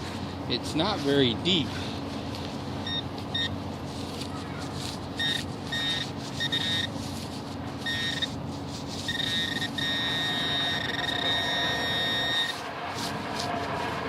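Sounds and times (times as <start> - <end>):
metal detector short beeps: 2.8 - 3.6, 5.2 - 7.0, 7.8 - 8.4, 9.0 - 12.6
metal detector steady tone: 2.8 - 3.6, 5.1 - 12.6.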